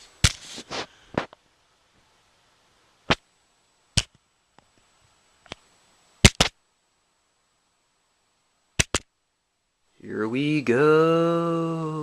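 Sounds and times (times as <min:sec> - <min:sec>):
sharp clicks: 0:06.2 - 0:06.6, 0:08.8 - 0:09.1.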